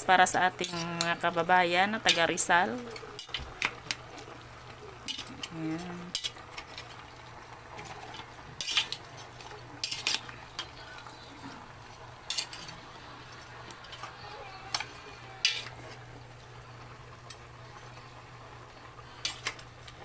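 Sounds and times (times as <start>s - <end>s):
metal spoon scraping a pot: 0.5s - 1.3s, 7.8s - 10.8s, 12.3s - 12.8s.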